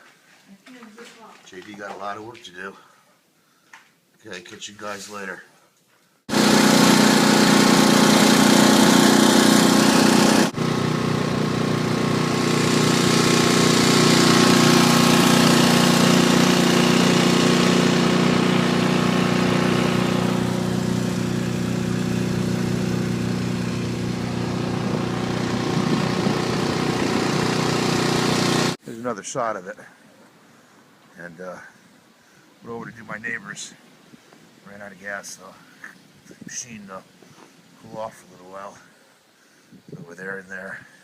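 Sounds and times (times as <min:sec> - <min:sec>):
snow blower engine running: 0:06.3 - 0:28.8.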